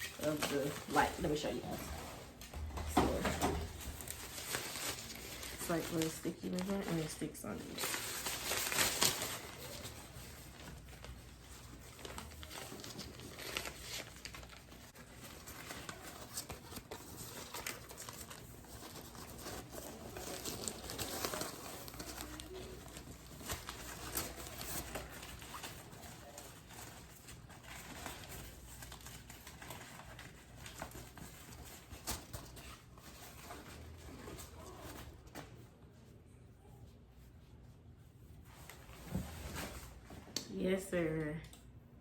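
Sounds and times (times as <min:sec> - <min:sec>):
plastic packaging crinkling: 0:03.1 - 0:35.1.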